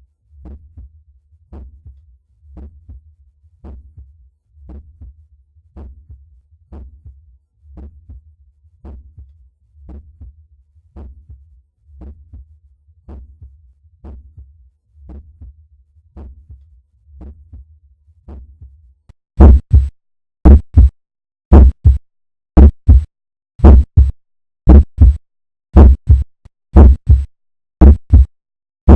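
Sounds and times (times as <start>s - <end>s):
heartbeat through stethoscope: 19.4s - 22.0s, 22.6s - 25.2s, 25.8s - 28.3s.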